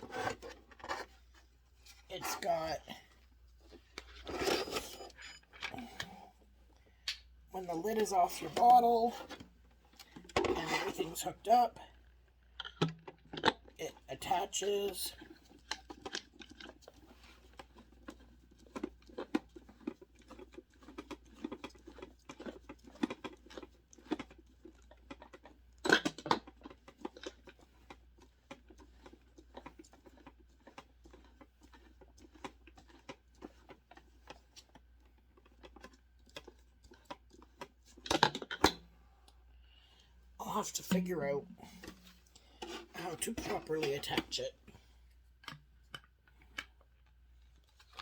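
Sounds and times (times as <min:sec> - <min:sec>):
plastic parts clicking and scraping: 0:00.0 - 0:02.0, 0:09.2 - 0:11.0, 0:15.2 - 0:38.8.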